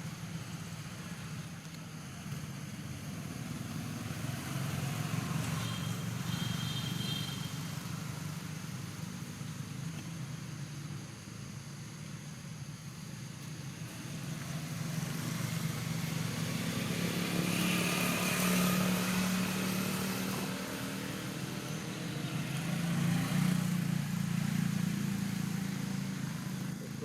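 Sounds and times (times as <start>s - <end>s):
vehicle engines passing: 0.0s - 27.0s.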